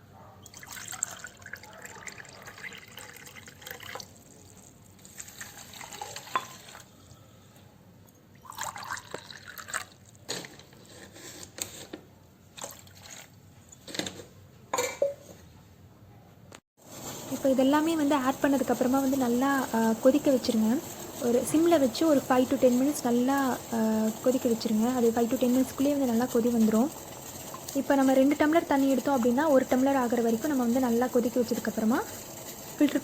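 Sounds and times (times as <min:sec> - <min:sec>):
water pouring into a pot: 0:00.5 - 0:07.0, 0:08.3 - 0:10.6, 0:16.9 - 0:33.0.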